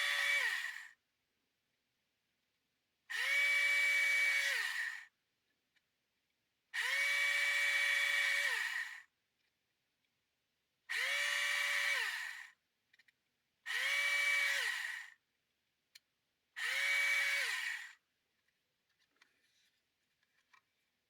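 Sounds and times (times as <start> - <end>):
small electric drill motor whining: 0.0 - 1.0, 3.1 - 5.2, 6.8 - 9.1, 10.9 - 12.6, 13.7 - 15.2, 16.6 - 18.0.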